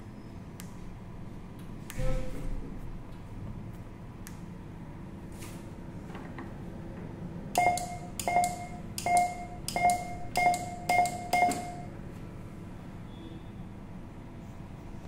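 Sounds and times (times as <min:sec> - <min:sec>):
short electronic beeps: 0:07.6 - 0:12.0.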